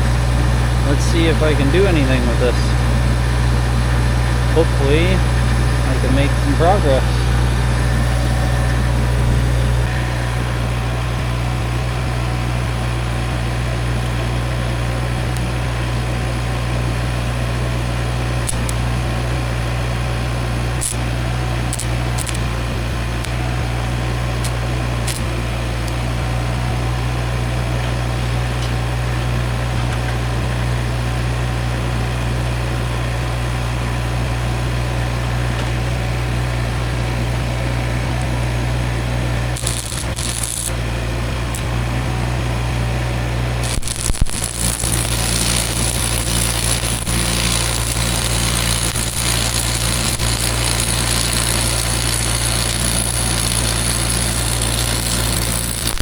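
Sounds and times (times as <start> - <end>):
arc welding hiss and crackle: 0.0 - 2.6, 5.4 - 27.5, 39.4 - 41.9, 43.6 - 56.0
engine idling: 0.0 - 56.0
sharp ticks: 18.5 - 18.8, 21.7 - 22.5, 24.4 - 26.0, 39.6 - 40.7, 43.6 - 56.0.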